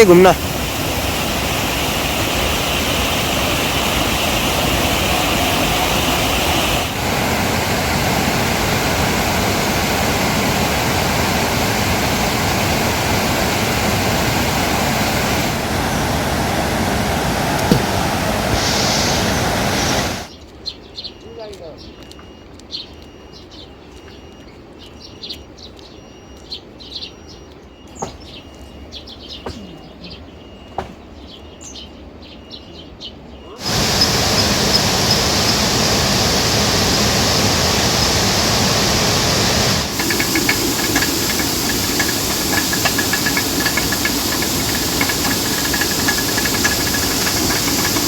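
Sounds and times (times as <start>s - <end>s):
birds chirping: 0.0s - 7.0s, 18.7s - 48.0s
loud steady hiss: 0.0s - 20.3s, 33.6s - 48.0s
rapidly pulsing high tone: 33.6s - 48.0s
sharp clicks: 33.6s - 48.0s.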